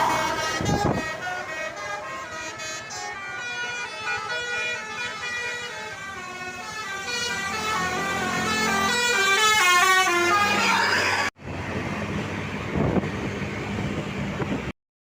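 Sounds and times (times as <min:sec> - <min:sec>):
musical air horn melody: 0:00.0 - 0:11.3
street traffic rumble: 0:00.0 - 0:14.8.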